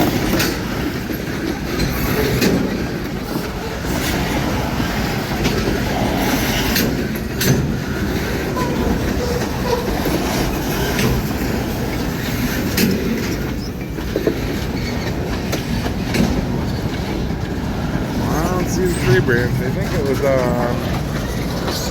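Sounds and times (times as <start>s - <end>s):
train wheel squeal: 0.0s - 17.2s
freight train rolling past: 0.0s - 21.9s
wheels clicking over rail joints: 0.0s - 21.9s.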